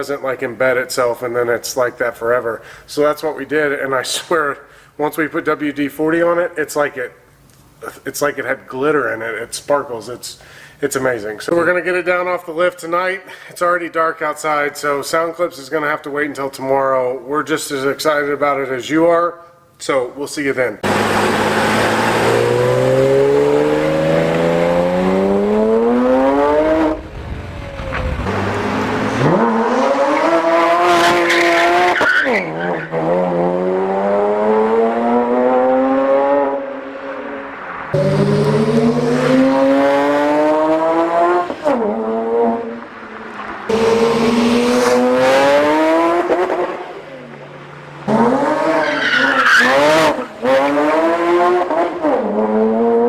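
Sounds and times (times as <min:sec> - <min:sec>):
car engine accelerating hard: 0:20.8 - 0:32.0, 0:32.8 - 0:46.9, 0:47.7 - 0:53.0
engine revving: 0:20.8 - 0:32.0, 0:32.9 - 0:37.2, 0:37.9 - 0:42.8, 0:43.6 - 0:46.9, 0:48.0 - 0:53.0.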